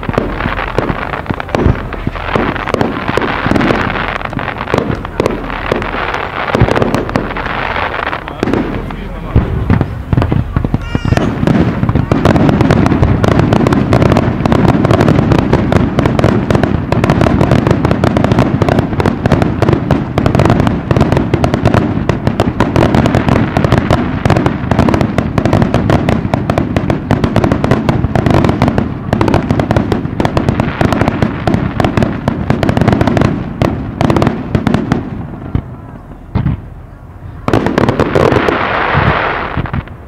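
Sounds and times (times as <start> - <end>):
firework shell bursts: 8.1 - 14.2.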